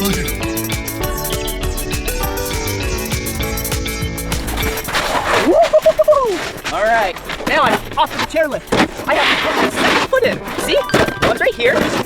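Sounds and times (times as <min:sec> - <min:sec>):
upbeat background music: 0:00.0 - 0:05.2.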